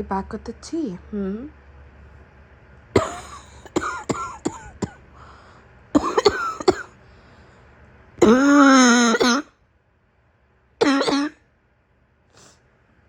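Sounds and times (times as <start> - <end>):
woman coughing: 3.0 - 5.0, 6.0 - 6.9, 8.2 - 9.5, 10.8 - 11.4.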